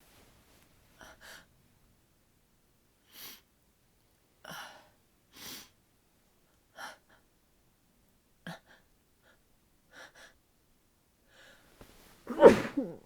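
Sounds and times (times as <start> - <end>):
muffled sneezes: 11.8 - 13.0
person gasping breaths: 12.3 - 13.0.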